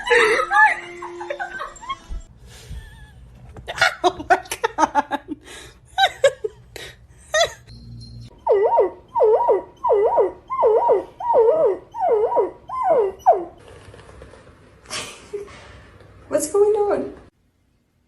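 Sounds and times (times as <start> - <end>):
pet animal whining: 7.9 - 13.6.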